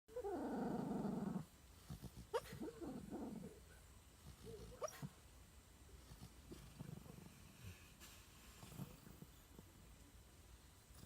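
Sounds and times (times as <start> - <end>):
dog growling: 0.1 - 3.6, 6.0 - 7.8, 8.6 - 9.6
dog woofing and whimpering: 4.3 - 5.2
dog yipping: 4.4 - 5.1.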